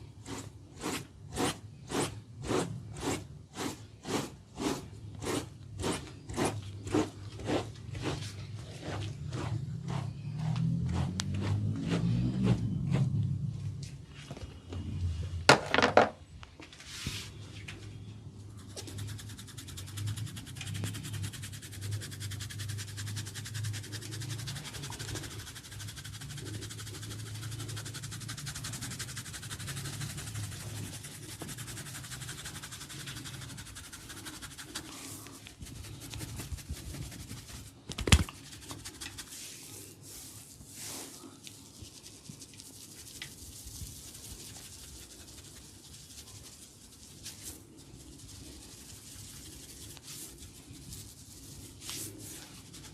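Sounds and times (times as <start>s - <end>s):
hands scratching scalp and hair: 18.6s - 52.9s.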